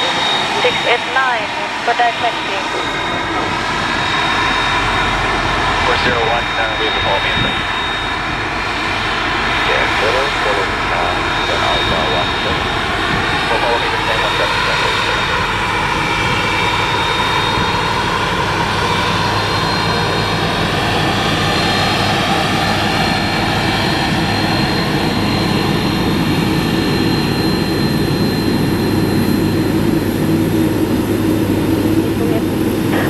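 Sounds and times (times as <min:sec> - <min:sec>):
high turbine whine: 0:00.0 - 0:33.0
jet engines roaring: 0:00.0 - 0:33.0.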